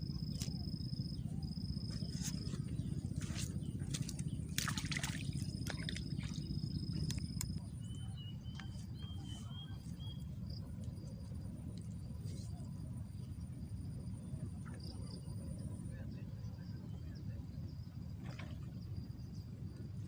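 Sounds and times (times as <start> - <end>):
chirps: 0.0 - 11.3
low rumble: 0.0 - 15.5
insect trills: 0.0 - 20.0.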